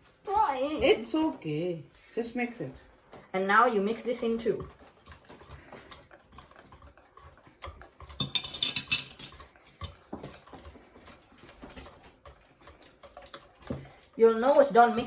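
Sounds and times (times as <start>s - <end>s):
utensil scraping a mixing bowl: 3.8s - 15.0s.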